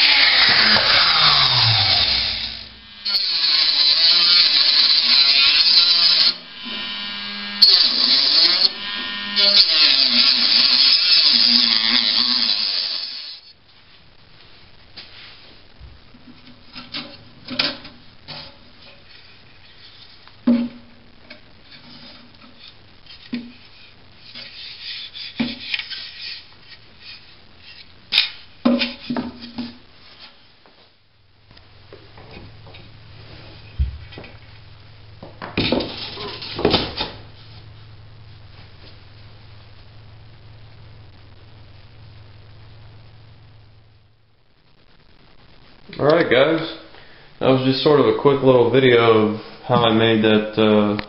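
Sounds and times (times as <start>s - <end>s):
low steady hum: 0.0s - 12.3s, 13.5s - 51.0s
wood rubbing: 21.7s - 30.4s.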